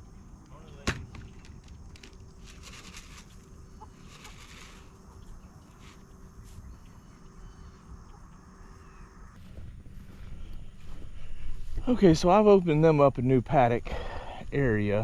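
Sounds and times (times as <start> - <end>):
chickens clucking: 3.6 - 7.4
low rumble: 5.2 - 12.4.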